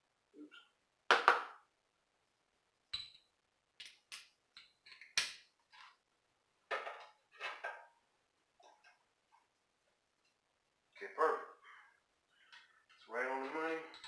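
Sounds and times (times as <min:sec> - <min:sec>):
metal hand tools clinking: 0:13.5 - 0:14.0.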